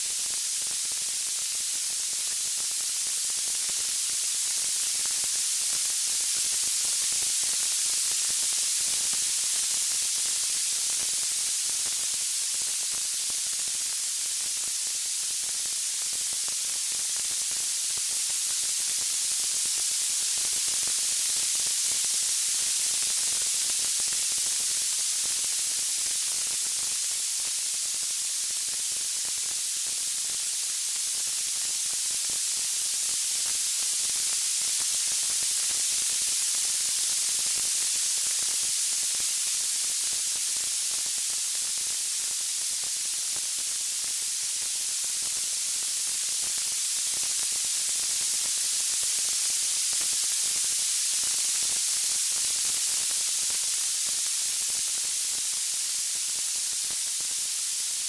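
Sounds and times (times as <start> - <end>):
white-noise hiss: 0.0 - 58.0.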